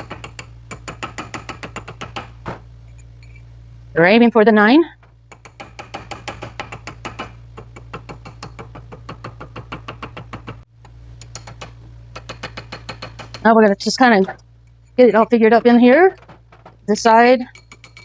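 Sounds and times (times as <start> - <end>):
steady low hum: 0.0 - 18.0
rapid tapping on metal ring: 11.2 - 14.4, 15.2 - 18.0.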